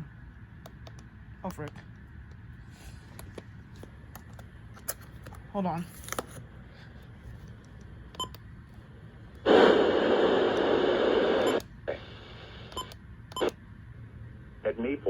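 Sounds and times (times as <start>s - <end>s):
radio static hiss: 9.4s - 12.8s.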